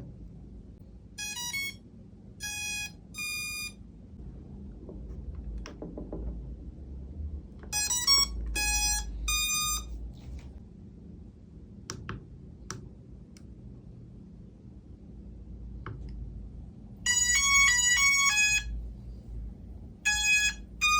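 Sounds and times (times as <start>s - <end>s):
toy drone power-on beeps: 1.2s - 1.8s, 2.4s - 3.8s, 7.8s - 9.9s, 17.1s - 18.7s, 20.1s - 20.9s.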